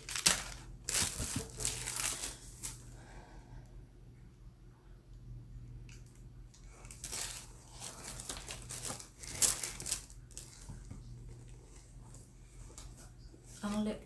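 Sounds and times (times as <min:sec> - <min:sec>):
packaging crinkling and rustling: 0:00.0 - 0:02.8, 0:06.6 - 0:11.5.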